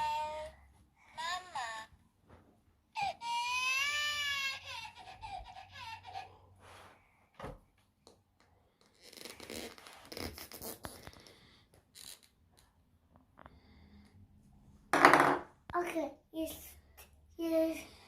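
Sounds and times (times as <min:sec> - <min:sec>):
electronic doll cry: 0:00.0 - 0:00.5, 0:03.0 - 0:06.3.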